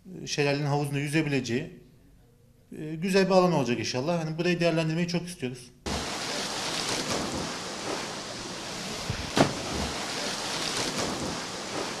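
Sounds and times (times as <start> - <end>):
waterfall pouring: 5.9 - 12.0
sudden loud hit: 9.3 - 10.1.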